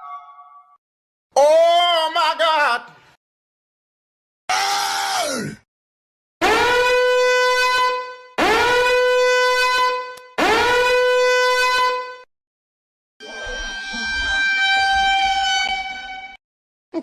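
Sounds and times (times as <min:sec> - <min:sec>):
horn-like wind instrument blasts: 0:06.4 - 0:12.3, 0:13.2 - 0:16.4.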